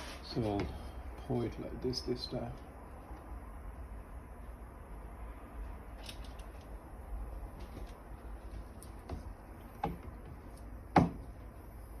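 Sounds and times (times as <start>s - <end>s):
loud knock: 10.9s - 11.2s.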